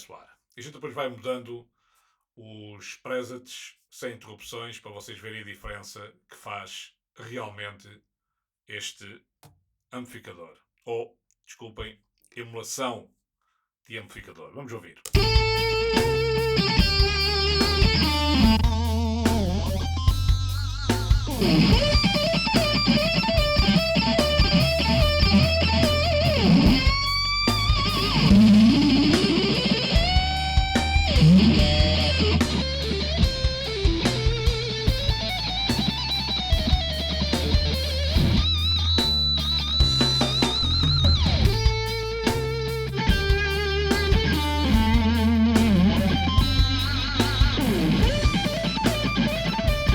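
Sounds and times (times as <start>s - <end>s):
drums: 15.1s - 49.9s
electric guitar solo: 15.2s - 20.1s, 21.2s - 39.8s, 40.7s - 49.9s
bass guitar: 15.2s - 49.9s.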